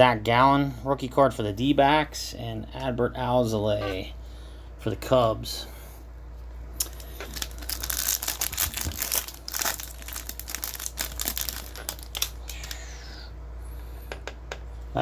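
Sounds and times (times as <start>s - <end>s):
foil wrapper crinkling and tearing: 6.8s - 13.0s.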